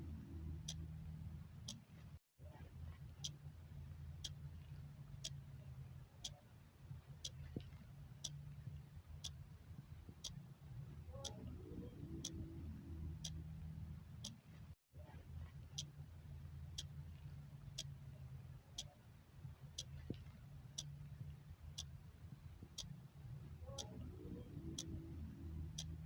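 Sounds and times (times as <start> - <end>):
faint low hum: 0.0 - 26.0
clock ticking: 24.8 - 25.0, 25.7 - 26.0.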